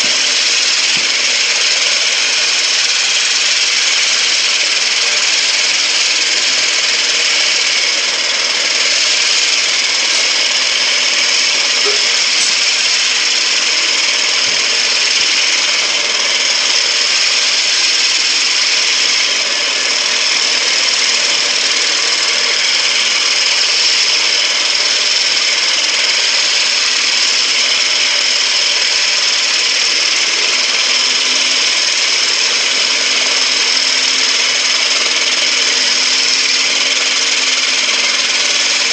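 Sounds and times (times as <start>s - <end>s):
concrete grinder grinding: 0.0s - 38.9s.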